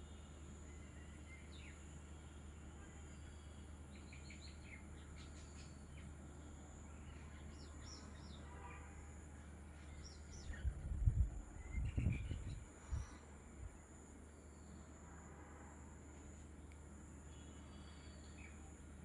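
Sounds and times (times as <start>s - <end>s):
small birds chirping: 3.1s - 8.5s, 11.5s - 13.3s.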